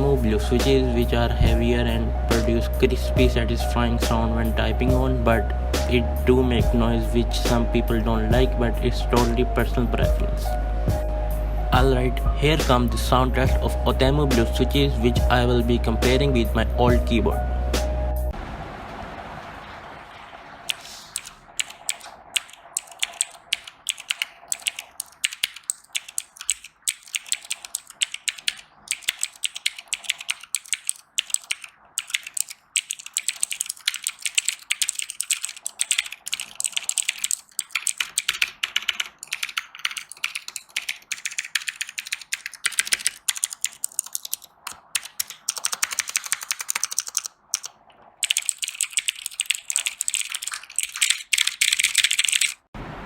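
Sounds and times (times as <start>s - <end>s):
typing on mechanical keyboard: 20.7s - 52.7s.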